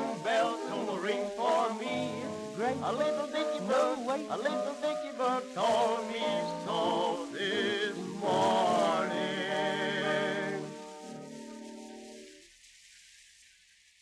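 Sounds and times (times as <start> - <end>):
vocal duet singing: 0.0 - 10.7
piano: 0.0 - 13.1
faint record hiss: 0.0 - 14.0.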